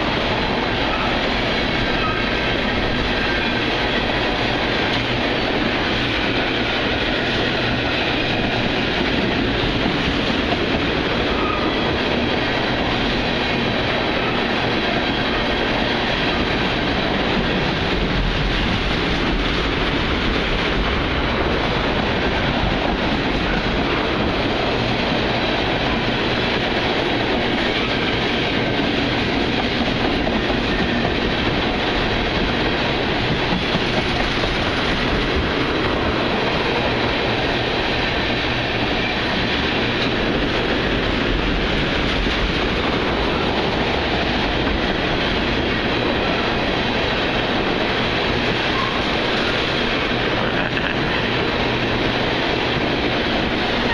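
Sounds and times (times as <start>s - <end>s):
freight train wheels on rail: 0.0s - 53.9s.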